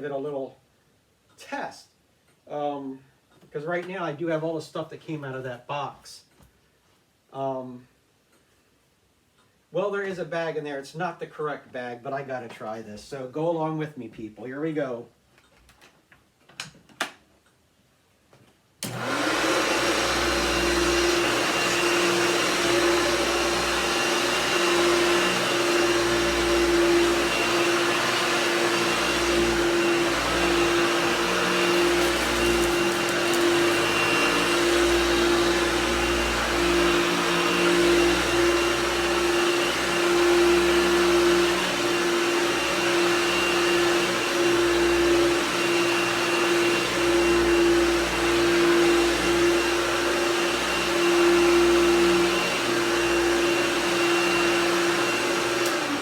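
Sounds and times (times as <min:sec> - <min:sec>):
vacuum cleaner running: 0:18.8 - 0:56.0.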